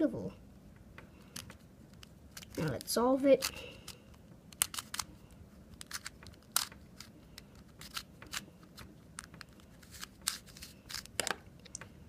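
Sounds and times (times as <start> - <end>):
plastic puzzle cube clicking: 4.5 - 5.1, 5.8 - 11.4.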